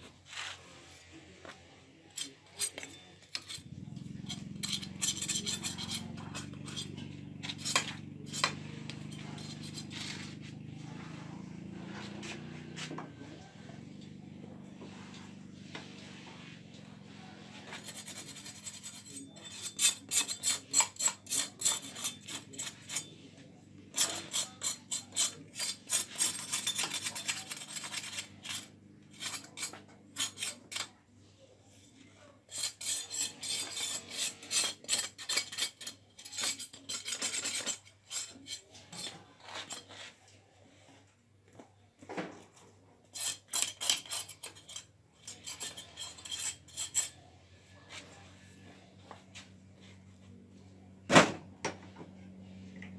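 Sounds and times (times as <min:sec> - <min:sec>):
knife scraping crisp pork skin: 0:17.7 - 0:23.1, 0:23.9 - 0:30.9, 0:32.5 - 0:40.0, 0:43.1 - 0:47.2.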